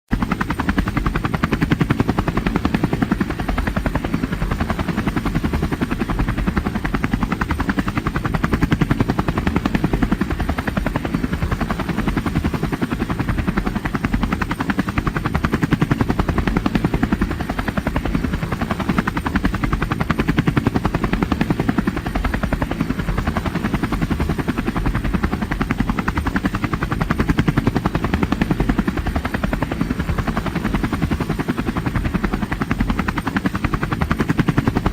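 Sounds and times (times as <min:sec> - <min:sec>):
helicopter rotor blades chopping: 0:00.1 - 0:34.9.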